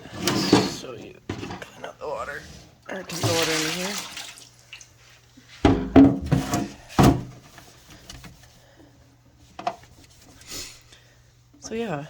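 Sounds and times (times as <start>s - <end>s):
plastic container knocking and clattering: 0.2s - 1.7s, 5.7s - 7.5s.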